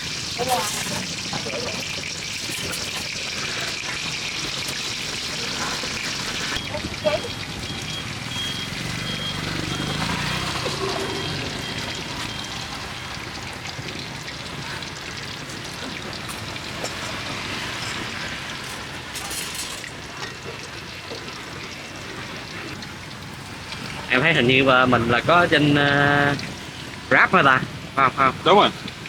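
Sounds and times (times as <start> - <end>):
food frying in hot oil: 0.0 - 29.0.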